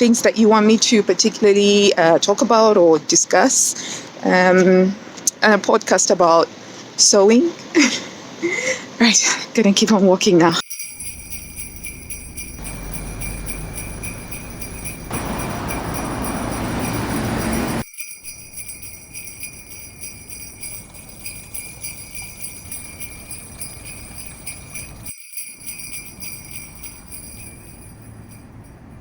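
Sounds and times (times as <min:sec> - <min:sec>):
jingling sleigh bells: 0:10.6 - 0:29.0
broad rushing noise: 0:12.6 - 0:17.8.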